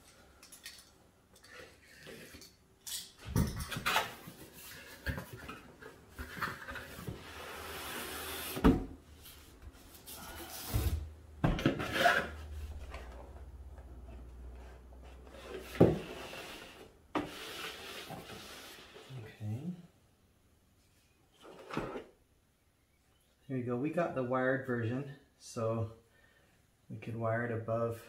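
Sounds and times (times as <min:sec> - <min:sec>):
cardboard sliding and rubbing: 0:06.2 - 0:11.1, 0:15.2 - 0:19.1.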